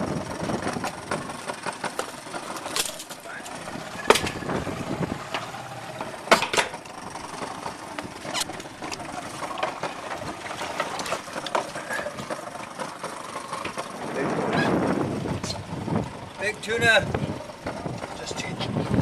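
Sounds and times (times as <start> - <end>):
boat engine running: 0.0 - 19.0
knocks and slaps on boat deck: 4.1 - 4.7.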